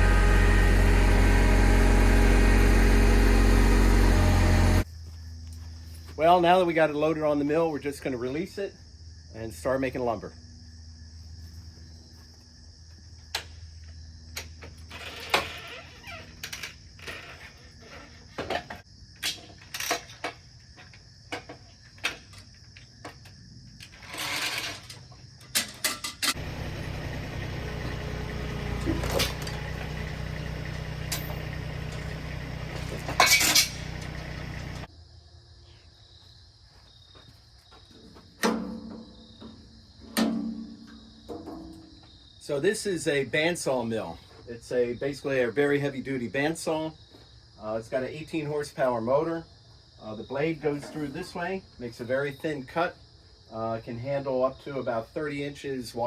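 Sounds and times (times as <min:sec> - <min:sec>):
motor running: 0:00.0 - 0:04.8, 0:26.4 - 0:34.9
crickets chirping: 0:04.8 - 0:56.0
metal chains clanking: 0:28.8 - 0:34.9.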